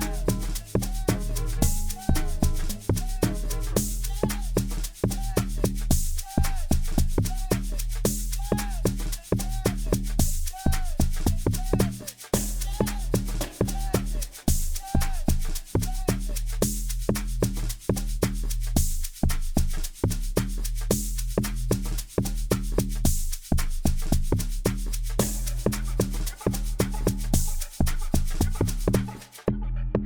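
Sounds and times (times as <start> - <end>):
bending pitched percussion: 0.0 - 6.2
shaker ticks: 0.0 - 29.5
deep bass line: 0.0 - 30.0.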